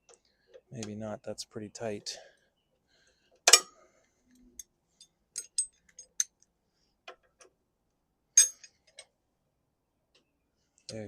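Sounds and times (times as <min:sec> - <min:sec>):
metal clicks of hand tools: 0:03.4 - 0:03.8.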